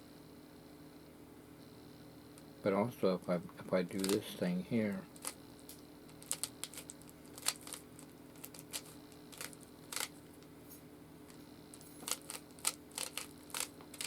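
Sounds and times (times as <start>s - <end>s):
puzzle cube layers clacking: 8.5s - 10.1s, 12.1s - 14.0s.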